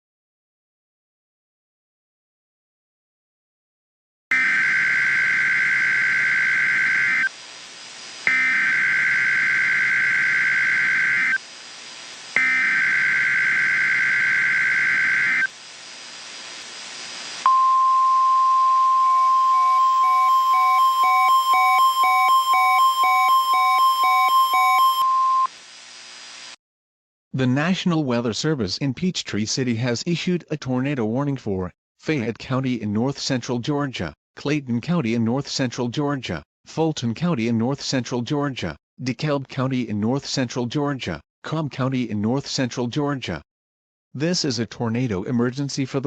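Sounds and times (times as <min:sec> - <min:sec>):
steady alarm tone: 0:04.3 - 0:07.3, 0:08.3 - 0:11.4, 0:12.4 - 0:15.5, 0:17.5 - 0:25.5.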